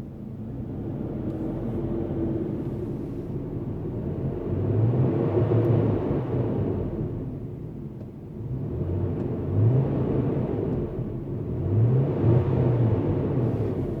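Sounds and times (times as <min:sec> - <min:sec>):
car engine revving: 0:08.5 - 0:14.0.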